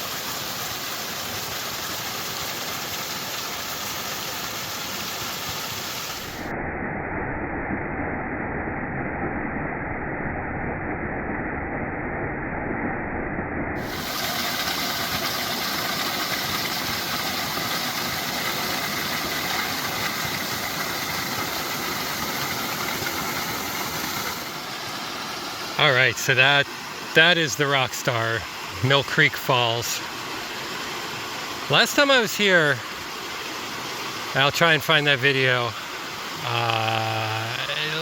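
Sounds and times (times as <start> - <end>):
waterfall roaring: 13.8 - 38.0.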